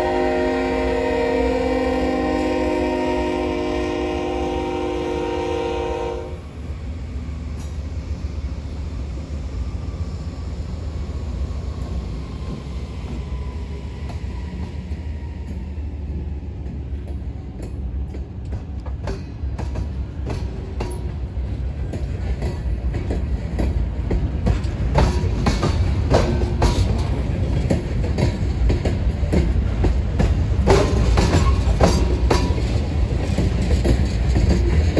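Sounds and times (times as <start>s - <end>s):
locomotive horn chord: 0.0s - 6.5s
train rumbling: 0.0s - 34.9s.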